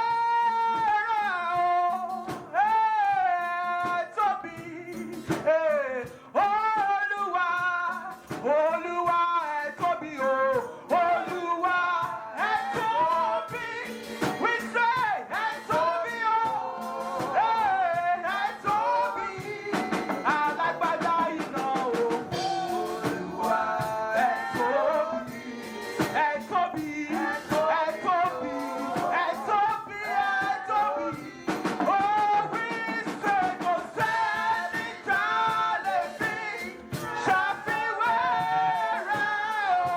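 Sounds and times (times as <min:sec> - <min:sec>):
drum kit beat: 0:00.0 - 0:39.9
person singing: 0:00.0 - 0:39.9.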